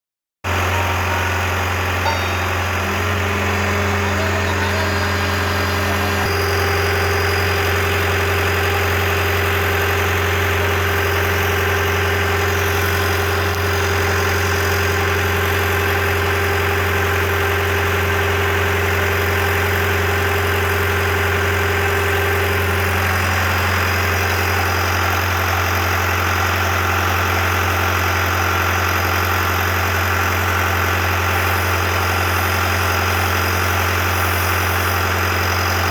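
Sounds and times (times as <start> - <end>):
engine drone: 0.4 - 35.9
higher machinery hums: 0.5 - 26.6.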